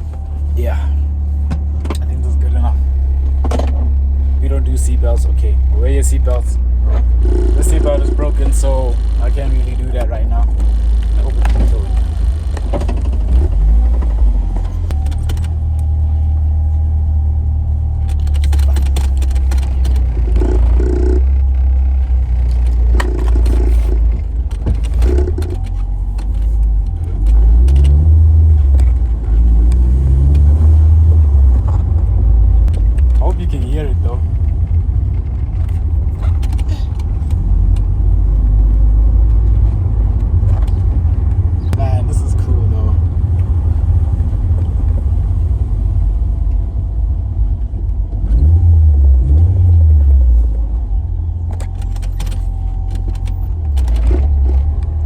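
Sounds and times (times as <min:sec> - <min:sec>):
car engine accelerating: 0:00.0 - 0:55.0
road rumble: 0:00.0 - 0:55.0
rattles and clicks: 0:01.1 - 0:16.7, 0:17.9 - 0:30.6, 0:31.2 - 0:45.6, 0:49.7 - 0:55.0.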